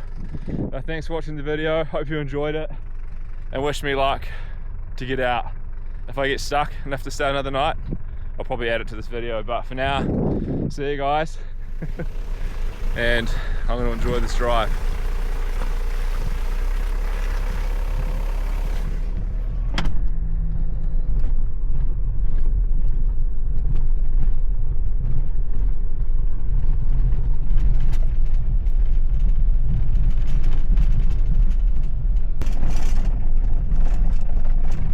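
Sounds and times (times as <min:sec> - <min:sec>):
van driving through snow: 0:11.6 - 0:34.9
knocks and crackles from wheels: 0:27.4 - 0:34.9.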